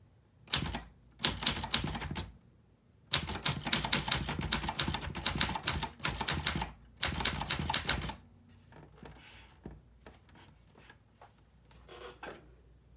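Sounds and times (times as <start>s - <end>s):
typewriter typing quickly: 0.5s - 2.3s, 3.1s - 8.2s.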